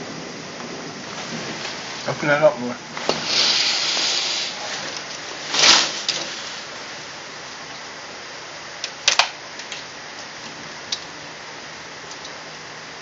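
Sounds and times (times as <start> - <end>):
loud rush of noise: 0.0 - 8.8
heavy rain hissing: 0.0 - 13.0
sharp clicks: 8.8 - 10.3, 12.1 - 12.4.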